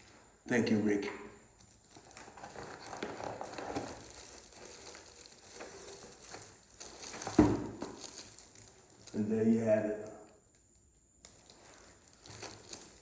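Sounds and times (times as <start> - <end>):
paper packaging rustling: 1.5 - 9.4, 11.2 - 13.0.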